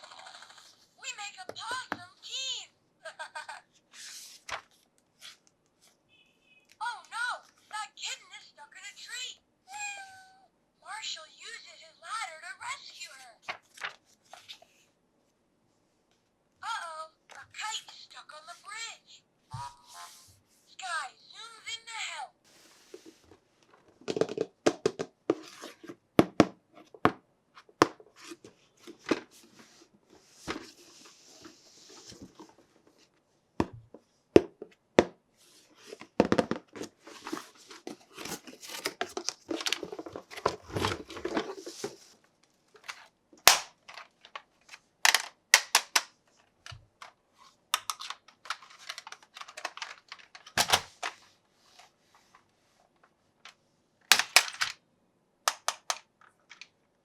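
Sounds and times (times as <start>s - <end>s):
hard plastic parts clicking: 36.2s - 42.0s, 42.8s - 47.2s, 47.8s - 51.2s, 54.1s - 54.8s, 55.5s - 56.8s.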